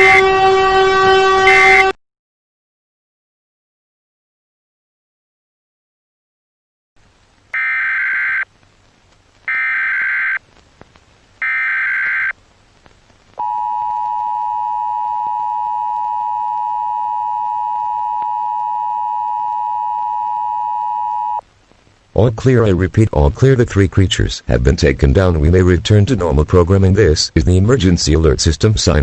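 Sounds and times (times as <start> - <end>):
data tone bursts: 7.6 - 8.4, 9.5 - 10.4, 11.4 - 12.3
two-tone attention signal: 7.6 - 8.4, 13.4 - 21.4.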